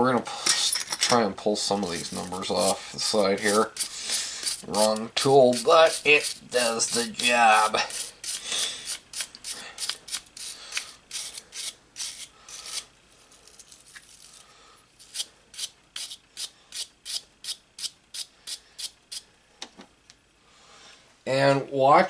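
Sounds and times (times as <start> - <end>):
hand tool scraping metal: 1.7 - 12.9, 15.0 - 19.2.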